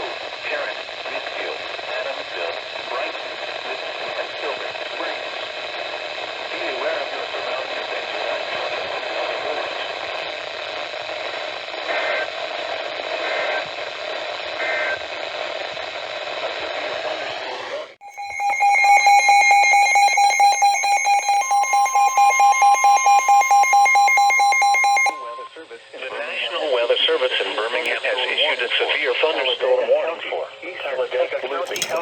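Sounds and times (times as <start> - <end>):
radio hiss and static: 0.0 - 18.0, 25.0 - 32.0
two-tone alert signal: 18.0 - 25.5.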